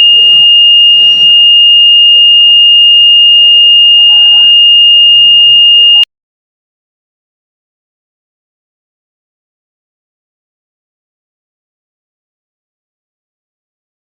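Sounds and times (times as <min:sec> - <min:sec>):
high-pitched buzzer tone: 0:00.0 - 0:06.1.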